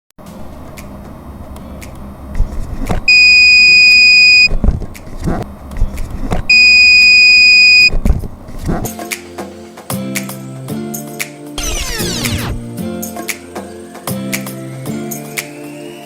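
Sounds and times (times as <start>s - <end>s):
high-pitched alarm buzzer beeps: 3.1s - 4.5s, 6.5s - 8.0s, 11.6s - 12.6s.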